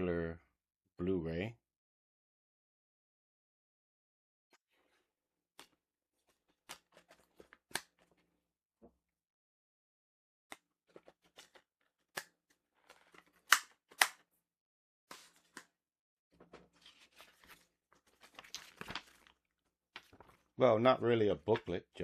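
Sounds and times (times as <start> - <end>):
paper rustling: 4.6 - 8.4, 10.6 - 14.0, 15.1 - 15.7, 16.3 - 20.6.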